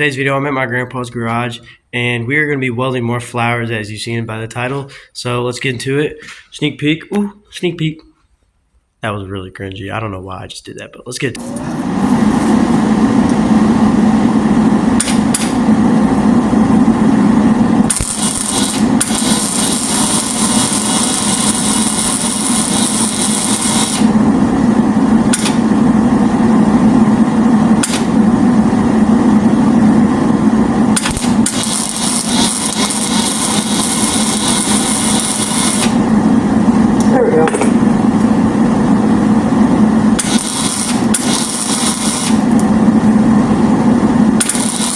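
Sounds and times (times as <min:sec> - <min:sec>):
steady low hum: 0:09.0 - 0:44.9
metalworking tool noise: 0:11.4 - 0:13.4, 0:17.9 - 0:24.2, 0:31.0 - 0:36.1, 0:40.2 - 0:42.7, 0:44.4 - 0:44.9.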